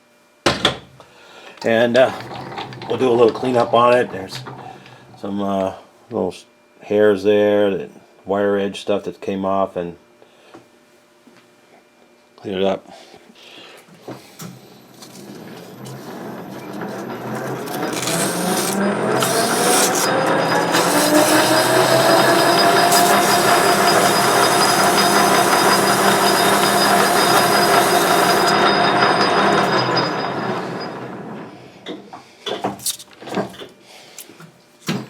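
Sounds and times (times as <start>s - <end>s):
metal lathe running: 1.6s - 5.3s, 14.8s - 31.5s.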